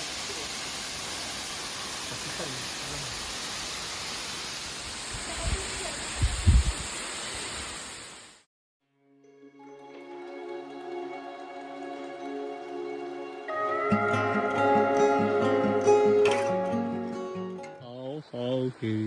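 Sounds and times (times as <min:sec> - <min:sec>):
waterfall rushing: 0:00.0 - 0:08.2.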